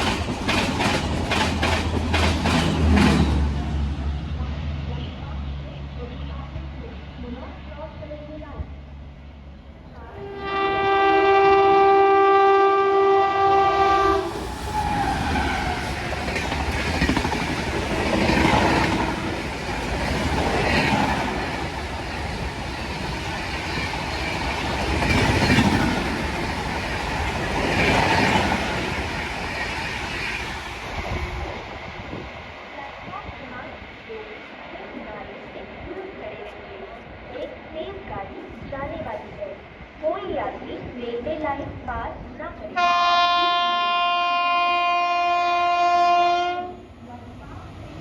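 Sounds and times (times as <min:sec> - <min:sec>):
train wheels clattering on rails: 0:00.0 - 0:03.8, 0:14.3 - 0:31.2
train horn long note: 0:10.2 - 0:15.8, 0:42.8 - 0:46.9.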